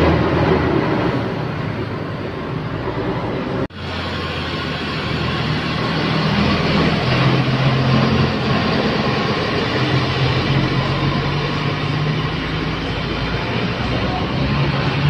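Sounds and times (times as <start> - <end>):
bus engine rumble: 0.0 - 15.0
road noise: 0.0 - 15.0.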